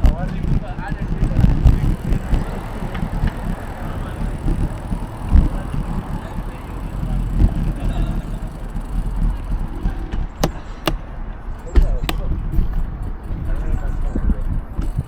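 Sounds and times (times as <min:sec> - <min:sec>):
bicycle tyres rolling on road: 0:01.4 - 0:10.8.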